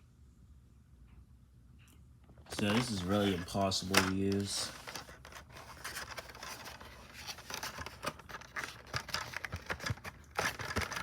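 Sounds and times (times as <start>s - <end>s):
plastic packaging crinkling: 2.5s - 11.0s.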